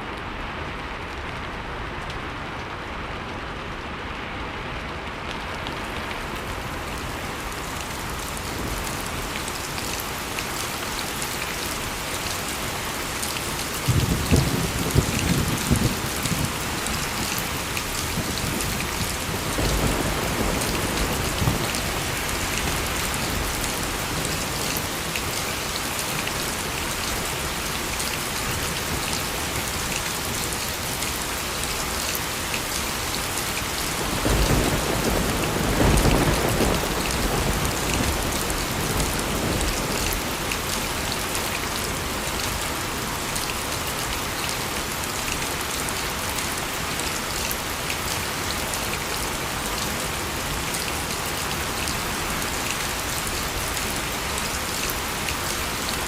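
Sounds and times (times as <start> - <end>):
heavy rainfall: 0.0 - 56.0
thunder rumble: 13.9 - 24.2, 34.0 - 40.3.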